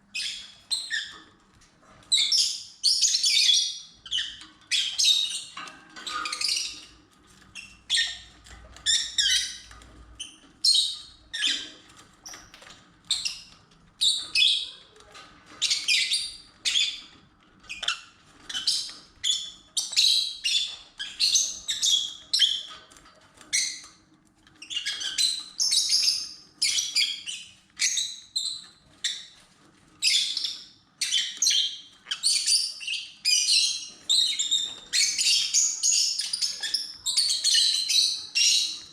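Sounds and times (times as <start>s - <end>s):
lovebirds chirping: 30.0s - 38.9s.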